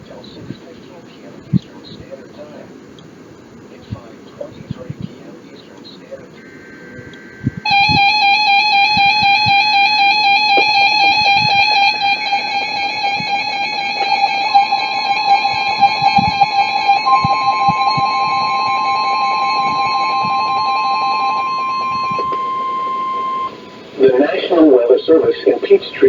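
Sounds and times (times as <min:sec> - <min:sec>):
warbling data bursts: 0:06.2 - 0:26.0
steady alarm tone: 0:06.3 - 0:26.0
buzzy warbling alert tone: 0:06.4 - 0:26.0.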